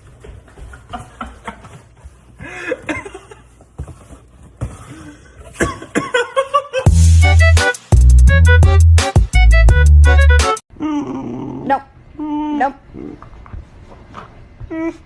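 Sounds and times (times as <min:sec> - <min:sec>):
music with heavy bass beat: 0:06.9 - 0:10.6.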